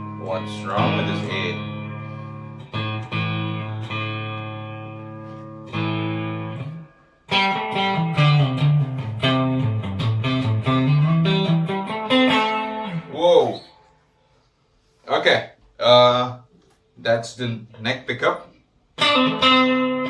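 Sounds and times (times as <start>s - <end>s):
clean electric guitar: 0.0s - 14.1s, 18.4s - 20.0s.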